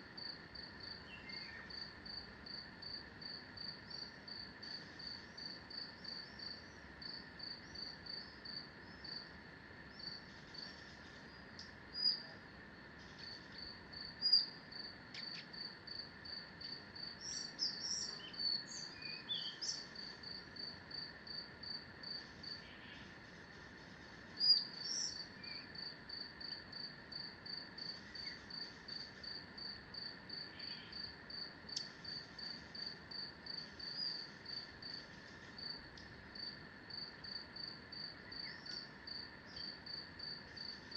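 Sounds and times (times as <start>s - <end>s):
cricket chirping: 0.0s - 40.9s
faint steady drone: 0.0s - 40.9s
forest birds calling: 1.0s - 1.7s, 17.2s - 19.9s.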